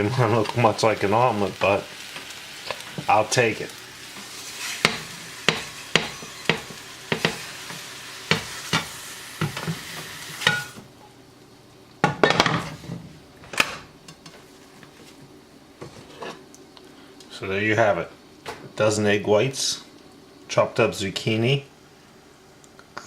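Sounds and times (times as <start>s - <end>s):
egg whites sizzling: 0.0s - 12.8s
spatula scraping frying pan: 4.0s - 10.8s.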